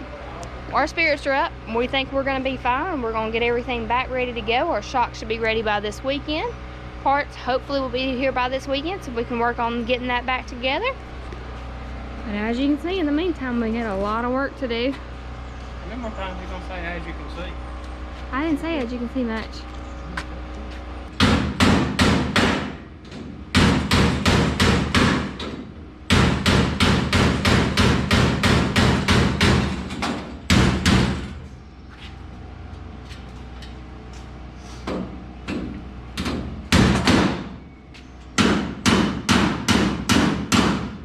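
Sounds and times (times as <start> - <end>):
hammer beating on metal: 26.1 - 29.7.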